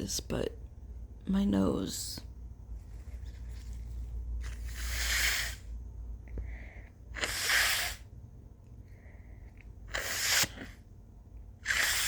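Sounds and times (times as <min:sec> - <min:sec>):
woman sneezing through nose: 0:07.1 - 0:08.0.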